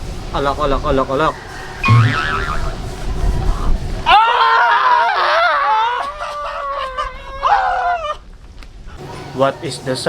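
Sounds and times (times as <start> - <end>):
high-pitched shrieking voice: 1.8 - 2.8.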